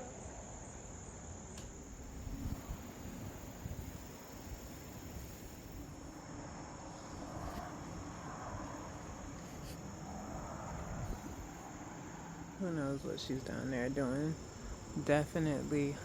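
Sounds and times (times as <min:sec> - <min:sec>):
crickets chirping: 0:00.0 - 0:16.0.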